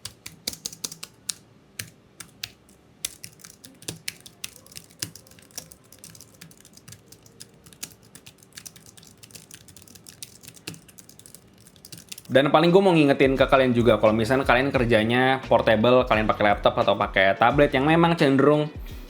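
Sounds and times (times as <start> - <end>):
keyboard key clicks: 0.0 - 12.3.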